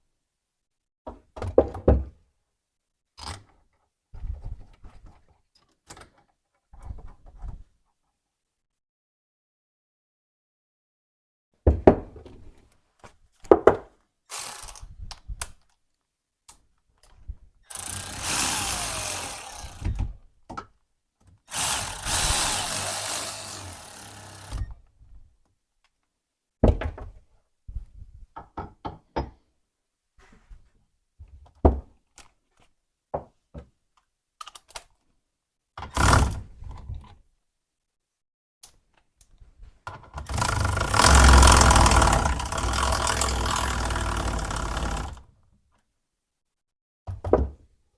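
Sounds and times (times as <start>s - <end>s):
steel parts clanking and knocking: 39.9s - 45.2s
continuous mechanical noise: 40.2s - 45.2s.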